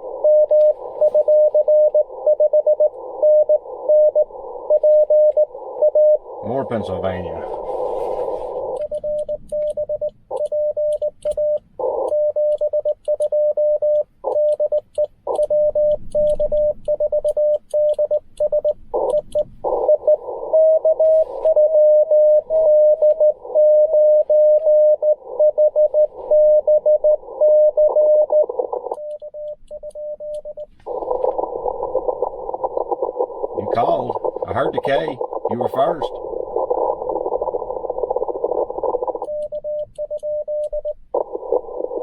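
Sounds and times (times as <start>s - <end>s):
radio band hiss: 0.0s - 2.3s, 2.9s - 9.0s, 18.9s - 27.4s, 30.7s - 39.2s
received morse signal: 0.0s - 42.0s
morse code sidetone: 0.1s - 42.0s.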